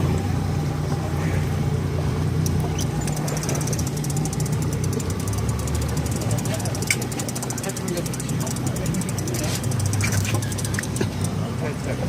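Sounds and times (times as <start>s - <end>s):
boat engine droning: 0.0s - 12.0s
rapid fine ticking: 2.5s - 11.4s
brief squeaks: 2.7s - 3.6s.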